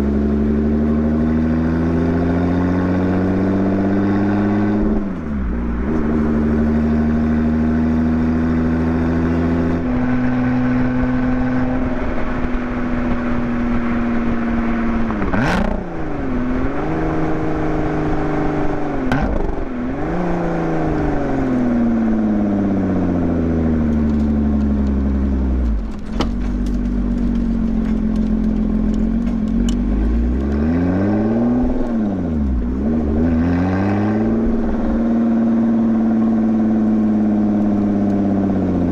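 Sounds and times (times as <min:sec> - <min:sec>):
car engine revving: 0:00.0 - 0:38.9
exhaust pops and crackles: 0:23.8 - 0:30.7.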